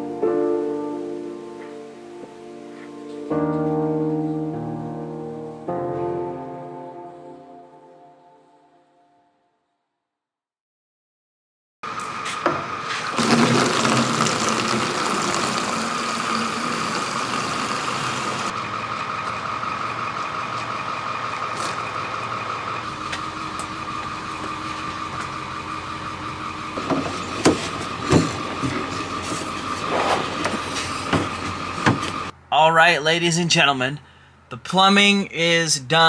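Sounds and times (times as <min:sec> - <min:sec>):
motor whining: 0:13.1 - 0:18.5.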